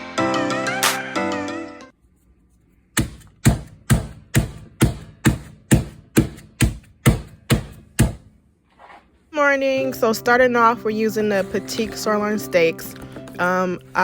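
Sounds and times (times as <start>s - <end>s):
mallet pounding steak: 3.0s - 8.4s.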